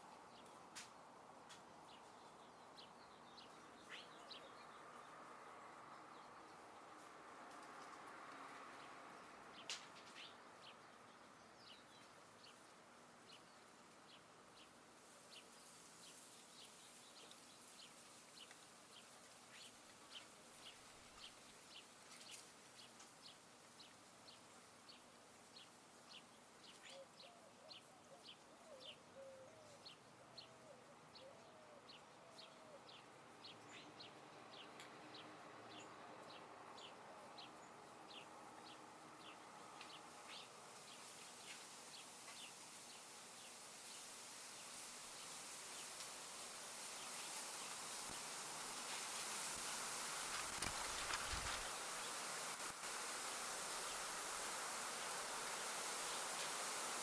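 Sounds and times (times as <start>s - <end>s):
faint outdoor air hiss: 0.0s - 57.0s
bird chirping: 1.9s - 5.2s.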